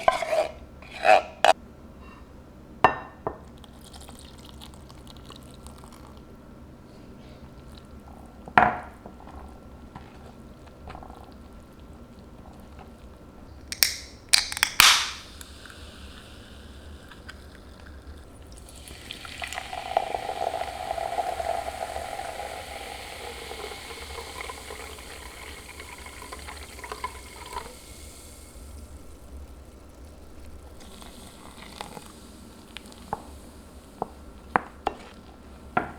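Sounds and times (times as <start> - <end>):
food sizzling in pan: 14.8 - 34.2.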